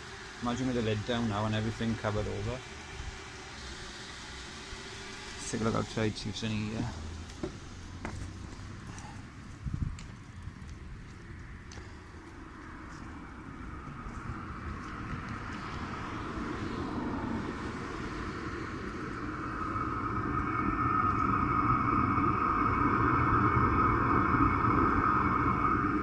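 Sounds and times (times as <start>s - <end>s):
fan whine: 0.0s - 26.0s
heater burner rumble: 0.0s - 26.0s.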